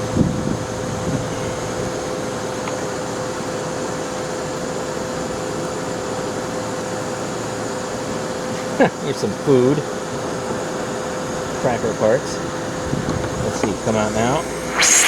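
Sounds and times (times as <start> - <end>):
vacuum cleaner motor running: 14.1 - 15.0.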